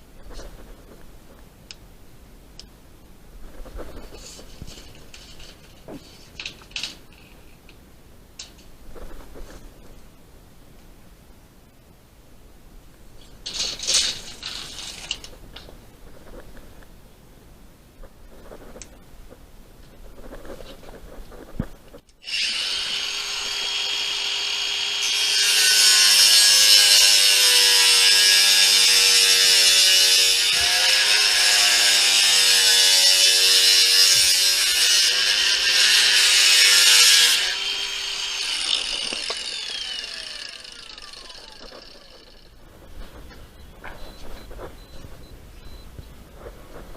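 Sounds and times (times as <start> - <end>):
power saw cutting board: 22.2 - 42.5.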